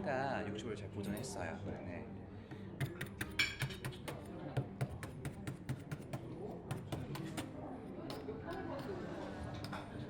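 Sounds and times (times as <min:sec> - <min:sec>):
soft background music: 0:00.0 - 0:10.0
salt crust tapped and cracked: 0:02.8 - 0:07.5.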